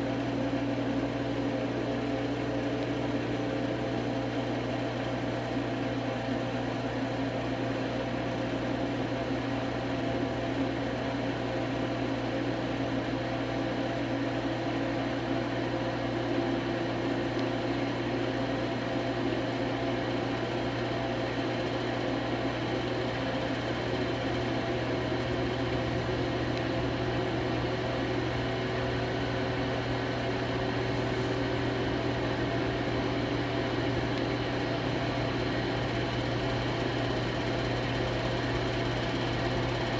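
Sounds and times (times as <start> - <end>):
washing machine drum spinning: 23.0 - 39.9.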